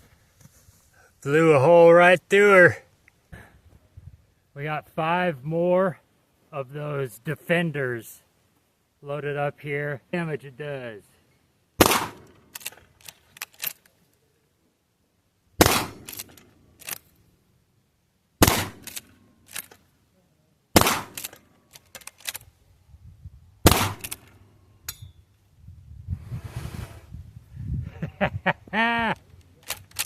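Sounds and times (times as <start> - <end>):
shotgun shots: 11.8 - 12.6, 15.6 - 16.5, 18.4 - 19.1, 20.8 - 21.4, 23.6 - 24.3.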